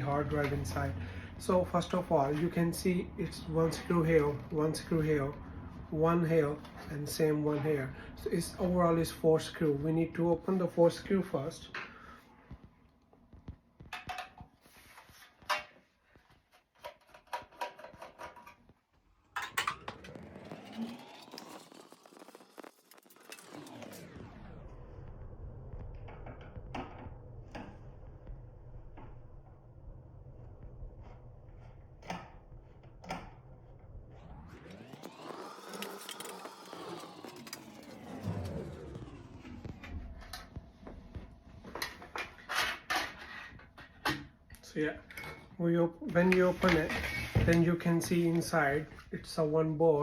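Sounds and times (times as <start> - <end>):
metal scrape: 41.8 - 44.0, 46.3 - 47.5.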